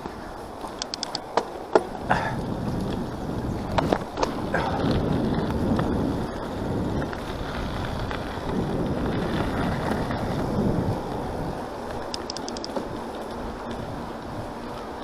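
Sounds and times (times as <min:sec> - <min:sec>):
bike rattling: 0:00.0 - 0:15.0
bike tyres rumbling: 0:00.0 - 0:15.0
wind buffeting microphone: 0:00.0 - 0:15.0
high ticks: 0:00.6 - 0:01.9, 0:11.9 - 0:13.8.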